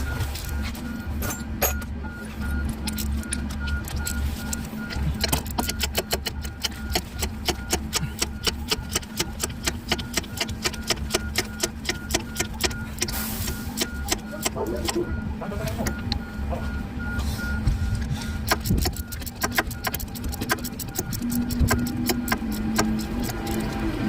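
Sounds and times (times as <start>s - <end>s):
socket ratchet clicking: 5.2s - 13.2s, 18.4s - 23.7s.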